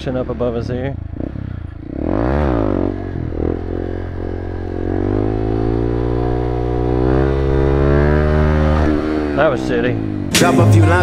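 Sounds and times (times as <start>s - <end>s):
motorcycle engine revving: 0.0s - 11.0s.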